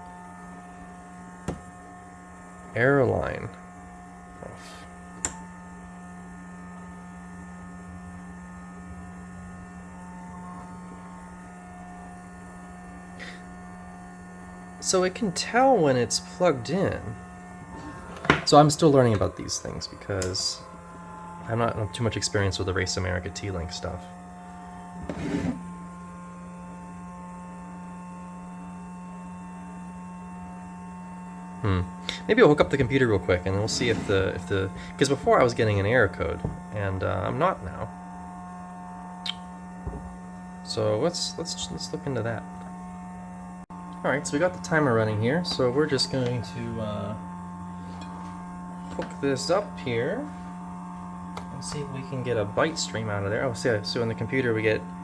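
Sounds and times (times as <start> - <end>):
electrical hum: 0.0 - 55.0
sharp click: 5.2 - 5.4, 39.2 - 39.5.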